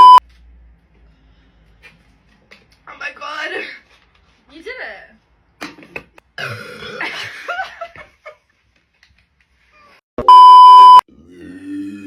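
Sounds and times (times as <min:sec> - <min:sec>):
censor bleep: 0:00.0 - 0:00.2, 0:10.2 - 0:11.0.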